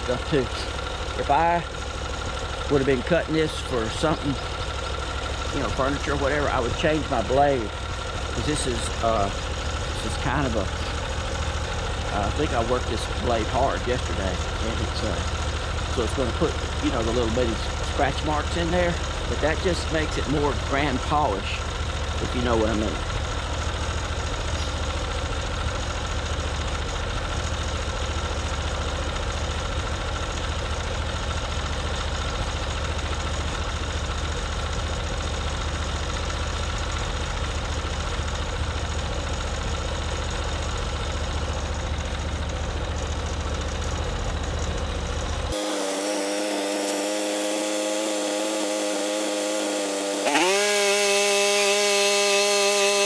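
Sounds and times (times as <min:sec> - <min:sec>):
gasoline engine running: 0:00.0 - 0:53.0.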